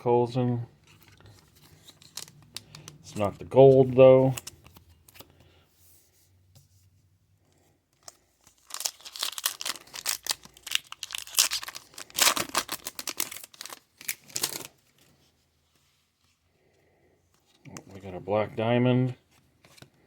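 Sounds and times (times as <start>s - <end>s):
card pack wrapper tearing and crinkling: 1.0s - 3.3s, 8.0s - 14.8s.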